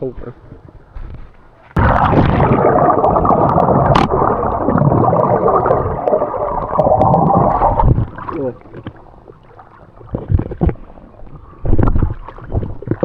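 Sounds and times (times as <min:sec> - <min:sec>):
underwater gurgling: 0:01.8 - 0:13.0.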